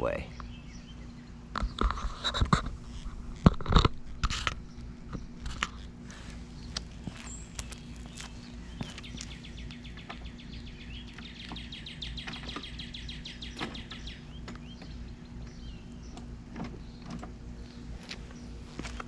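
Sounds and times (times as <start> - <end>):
low steady hum: 0.0 - 19.0
bird trilling and chirping: 4.6 - 16.2.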